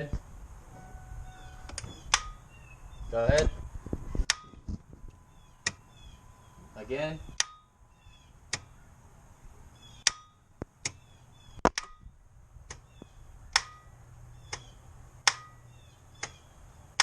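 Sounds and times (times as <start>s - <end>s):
starter solenoid clicking: 16.2s - 16.4s.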